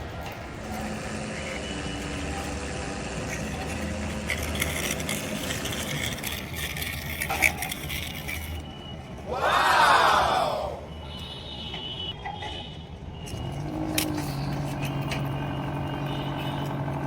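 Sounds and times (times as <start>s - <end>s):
engine-like hum: 0.0s - 11.0s, 13.1s - 17.0s.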